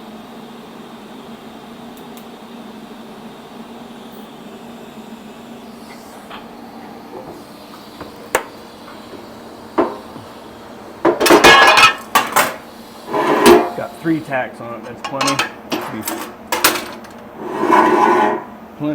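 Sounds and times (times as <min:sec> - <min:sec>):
shop hum: 0:00.0 - 0:18.9
metal tools clattering: 0:11.1 - 0:13.9, 0:14.8 - 0:18.5.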